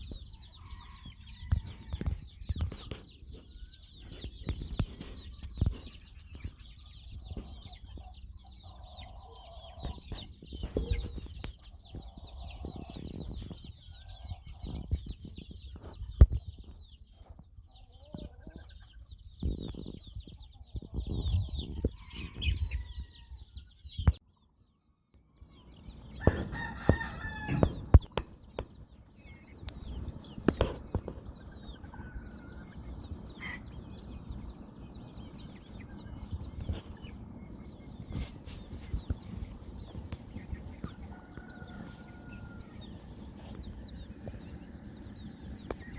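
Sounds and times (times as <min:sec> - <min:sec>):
birds chirping: 0:00.0 - 0:45.9
roosters clucking: 0:00.0 - 0:45.9
rooster crows: 0:00.4 - 0:02.1, 0:21.9 - 0:23.5, 0:26.2 - 0:27.9, 0:40.9 - 0:43.0.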